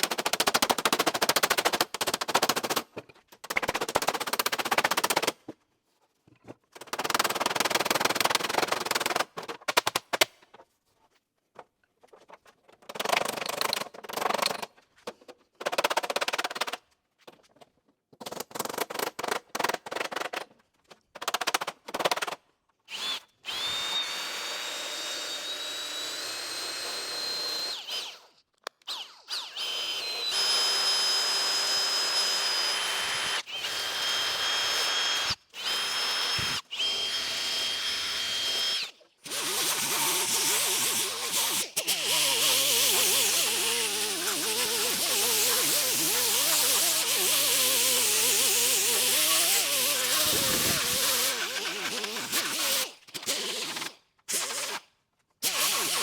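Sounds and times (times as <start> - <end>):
power tool high whine: 22.9 - 28.3, 28.9 - 52.8
choppy tool noise bursts: 28.9 - 54.8.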